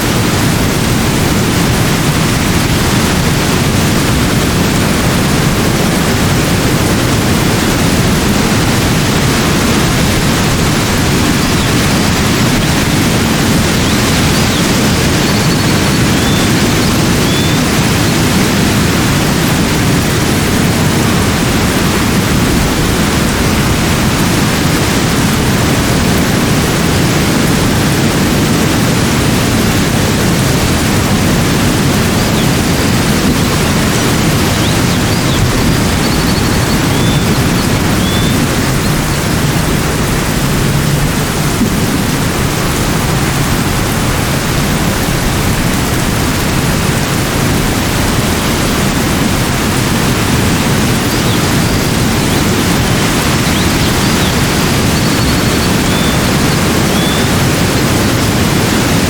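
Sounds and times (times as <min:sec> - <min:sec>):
steady loud rushing noise: 0:00.0 - 0:59.0
faint high chirps: 0:34.6 - 0:39.1, 0:53.5 - 0:57.3.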